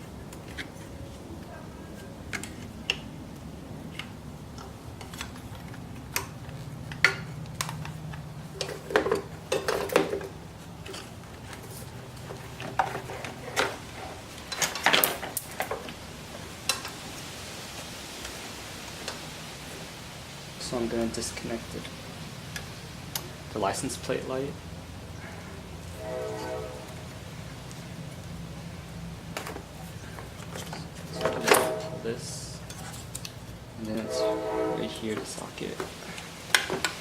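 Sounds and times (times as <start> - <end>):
motorcycle parts clattering: 5.0 - 16.0, 29.3 - 32.0.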